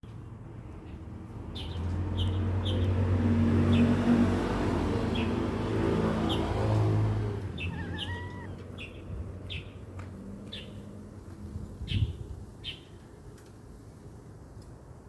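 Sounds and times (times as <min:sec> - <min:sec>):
vehicle engine humming: 0:01.3 - 0:11.7
bird chirps: 0:07.6 - 0:09.7.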